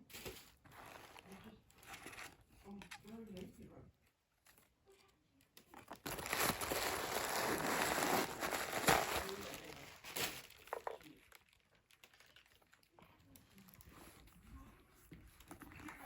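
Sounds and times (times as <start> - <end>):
packaging crinkling: 5.7 - 12.9.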